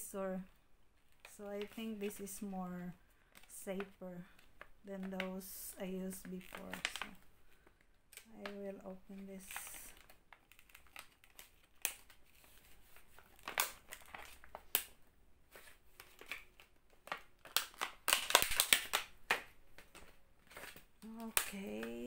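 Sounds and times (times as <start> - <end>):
packaging crinkling and tearing: 6.1 - 22.0.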